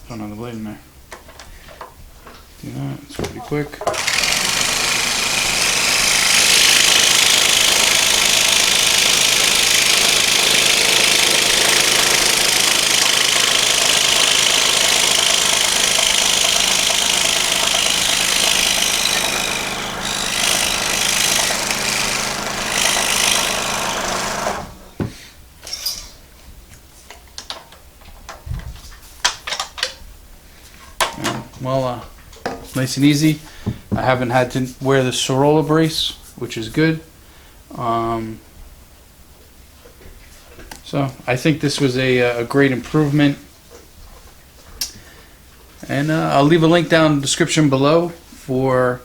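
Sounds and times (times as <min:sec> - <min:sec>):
scroll saw cutting wood: 0:03.9 - 0:25.1.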